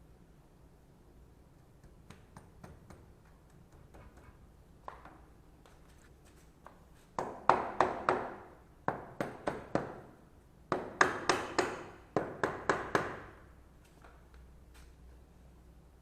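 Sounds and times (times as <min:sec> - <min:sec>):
hammer tapping on hard object: 0:07.2 - 0:10.0, 0:10.7 - 0:13.3.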